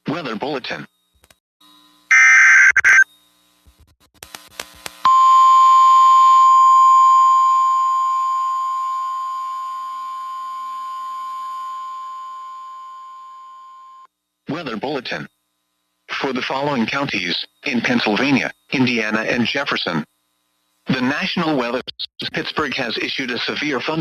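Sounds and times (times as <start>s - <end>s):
shrill digital data burst: 2.1s - 3.0s
steady warning alarm tone: 2.1s - 3.0s.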